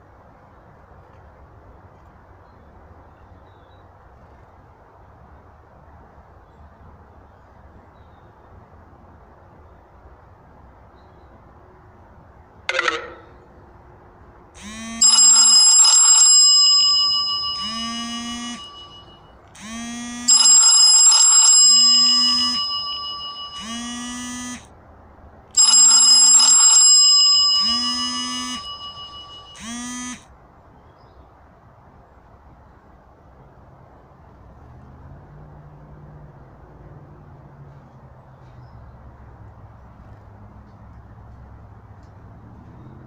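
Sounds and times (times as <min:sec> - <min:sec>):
phone ringtone chime: 0:12.7 - 0:13.2, 0:14.6 - 0:24.6, 0:25.6 - 0:30.2.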